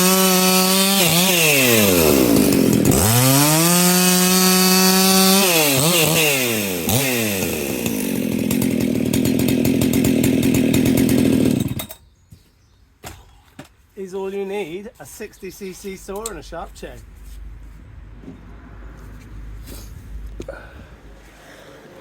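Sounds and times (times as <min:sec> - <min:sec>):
chainsaw cutting wood: 0:00.0 - 0:12.0.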